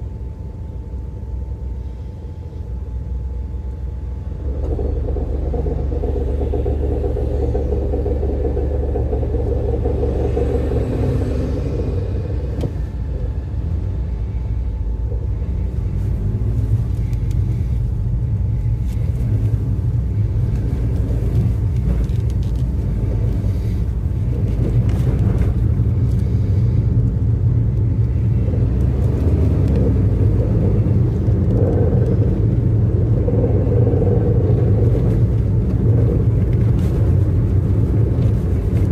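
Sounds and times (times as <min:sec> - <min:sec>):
car engine running: 0:00.0 - 0:38.9.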